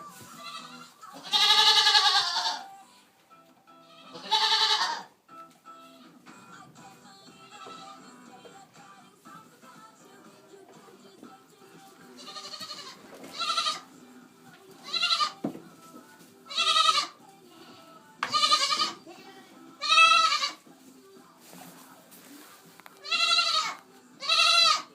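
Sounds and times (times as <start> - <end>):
goat bleating: 0.3 - 2.7, 3.8 - 5.1, 7.4 - 8.2, 12.2 - 14.0, 14.8 - 15.4, 16.5 - 20.6, 23.0 - 24.9.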